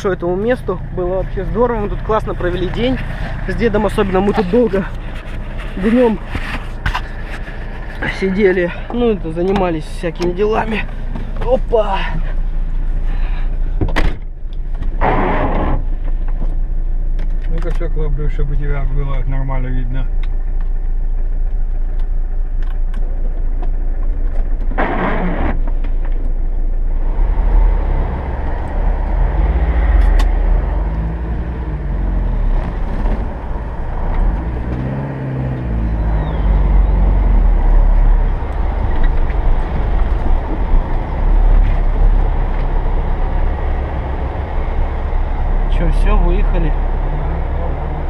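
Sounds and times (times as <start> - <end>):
van engine pulling away: 16.6 - 48.0.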